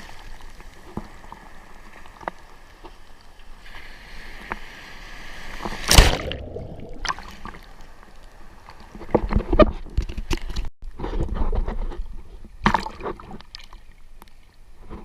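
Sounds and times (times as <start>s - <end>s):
sea water splashing: 0.0s - 9.0s.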